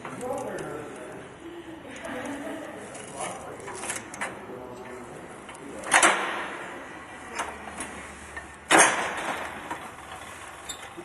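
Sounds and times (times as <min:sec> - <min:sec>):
loud metal clacks: 0:08.6 - 0:10.2.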